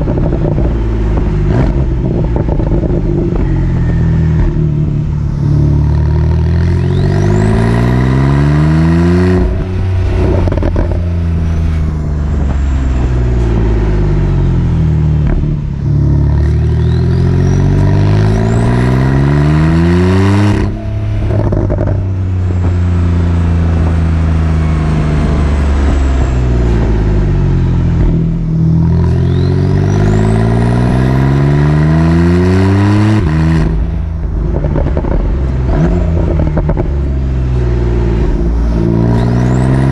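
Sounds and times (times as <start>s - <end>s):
car engine revving: 0.0s - 39.9s
faint turbo whistle: 3.2s - 4.6s.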